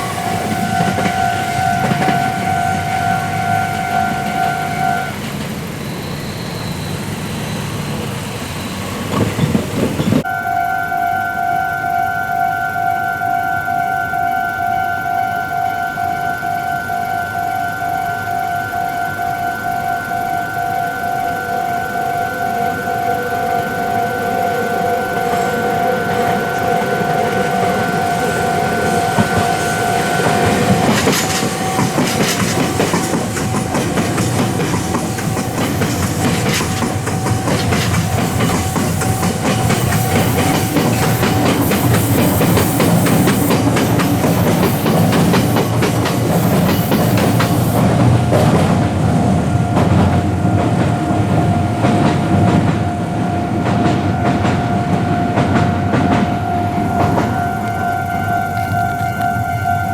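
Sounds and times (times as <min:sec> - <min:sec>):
train wheels clattering over rails: 0:00.0 - 0:10.3, 0:24.9 - 0:57.8
level-crossing alarm bell ringing: 0:00.0 - 0:59.9.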